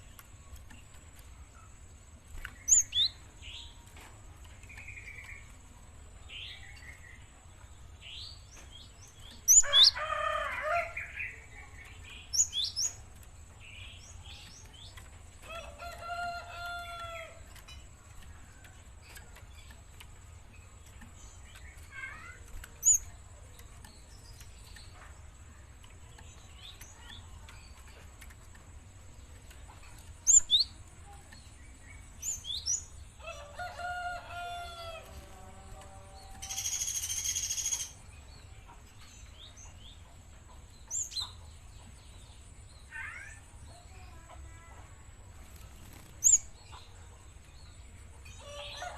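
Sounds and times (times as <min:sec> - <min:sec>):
sparrow chirping: 0:02.4 - 0:03.8, 0:06.2 - 0:10.0, 0:10.8 - 0:15.3, 0:19.5 - 0:33.2, 0:36.3 - 0:44.2
rooster crowing: 0:09.6 - 0:11.0, 0:33.2 - 0:35.0.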